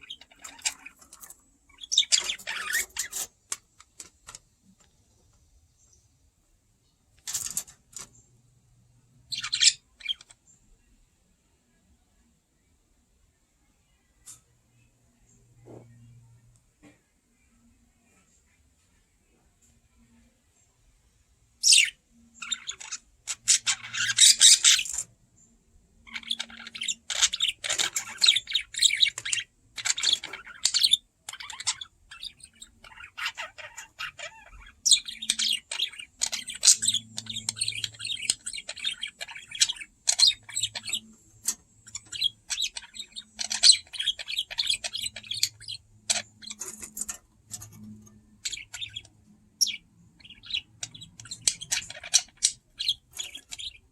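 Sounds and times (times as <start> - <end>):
budgerigar chirping: 0.0 - 3.3, 9.3 - 10.4, 21.6 - 25.1, 26.0 - 41.1, 41.8 - 46.8, 48.4 - 53.9.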